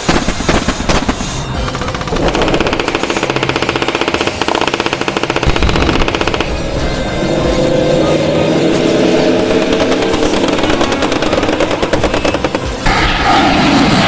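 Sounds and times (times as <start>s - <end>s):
emergency alert alarm tones: 1.0s - 12.7s.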